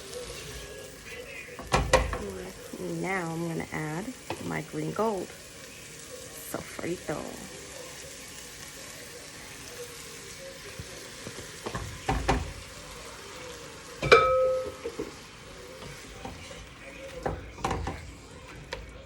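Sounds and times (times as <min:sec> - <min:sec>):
food sizzling in a pot: 0:00.0 - 0:19.0
spoon striking pot ringing: 0:14.0 - 0:15.0
spoon scraping and knocking pot: 0:17.2 - 0:18.1.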